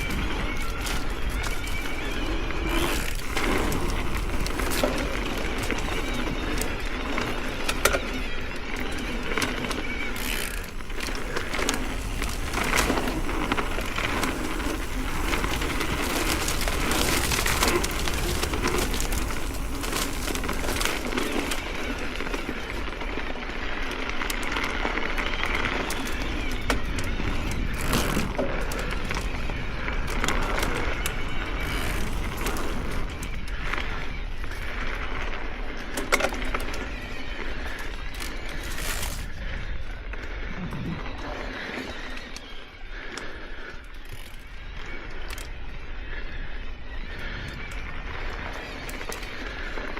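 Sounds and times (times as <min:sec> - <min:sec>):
tyres crunching over dirt and rocks: 0:00.0 - 0:39.3
bike clicking and rattling: 0:00.0 - 0:46.4, 0:47.0 - 0:49.9
low rumble: 0:40.4 - 0:41.4.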